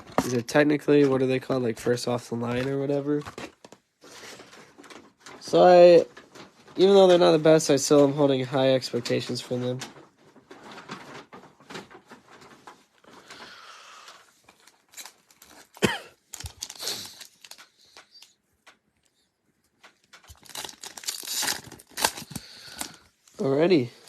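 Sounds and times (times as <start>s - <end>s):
plastic wrapping torn and crinkled: 14.0s - 18.3s, 19.8s - 24.0s.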